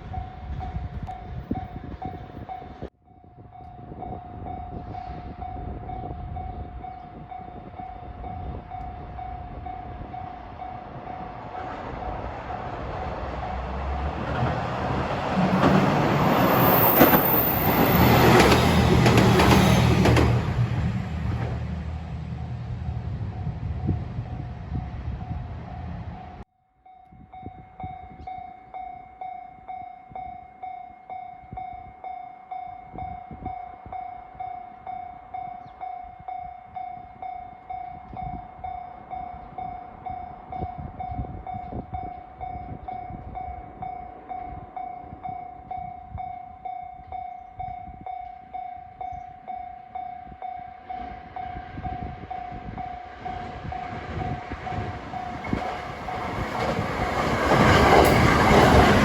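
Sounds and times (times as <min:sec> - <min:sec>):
level-crossing warning bell: 0:00.0 - 0:11.5, 0:25.7 - 0:59.0
approaching electric train: 0:00.0 - 0:26.5, 0:32.9 - 0:59.0
low rumble: 0:19.9 - 0:26.4.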